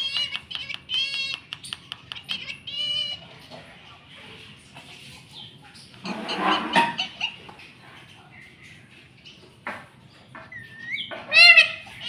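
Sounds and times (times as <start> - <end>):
parrot squawking: 0.0 - 3.4, 6.0 - 7.5, 10.4 - 12.0
parrot chatter: 0.0 - 3.9, 6.0 - 8.9, 10.3 - 12.0.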